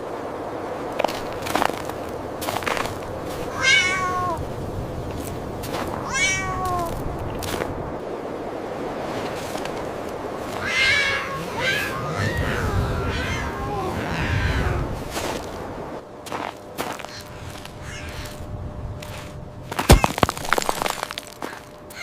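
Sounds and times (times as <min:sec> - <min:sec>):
cat meowing: 0:03.5 - 0:04.4, 0:06.0 - 0:06.9, 0:10.6 - 0:15.0.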